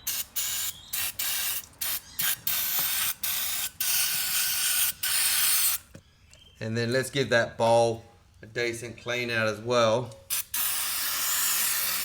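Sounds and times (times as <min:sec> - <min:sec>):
aerosol can spraying in hissing bursts: 0:00.0 - 0:05.8, 0:10.3 - 0:12.0.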